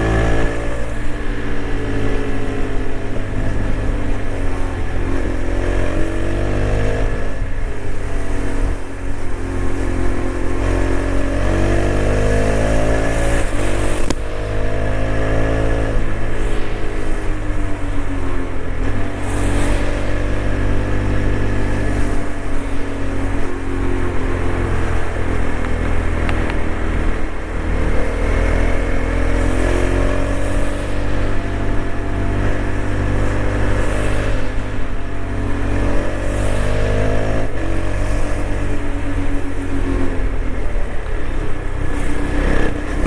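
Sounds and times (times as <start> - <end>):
motorcycle engine at speed: 0.0 - 43.0
wind and road noise: 0.0 - 43.0.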